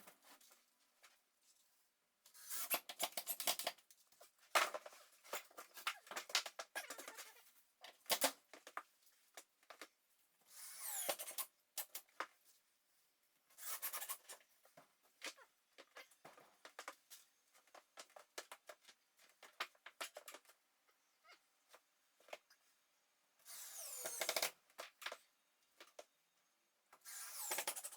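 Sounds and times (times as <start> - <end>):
squeaky scrape: 6.8 - 7.4, 13.6 - 14.4
hand tool scraping and rubbing: 13.6 - 14.4.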